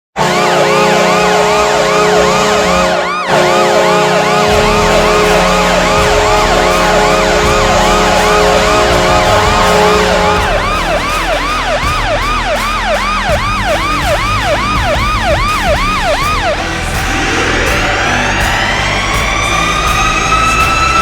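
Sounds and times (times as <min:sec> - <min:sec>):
goal horn blast: 0:00.2 - 0:21.0
siren-like whoop: 0:00.2 - 0:21.0
deep bass: 0:03.3 - 0:21.0.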